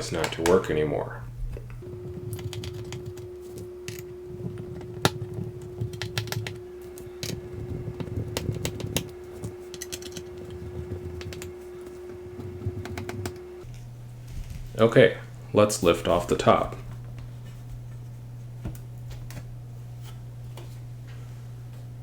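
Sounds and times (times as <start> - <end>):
faint steady hum: 0.0 - 22.0
screwdriver clicking on metal case: 7.2 - 11.6.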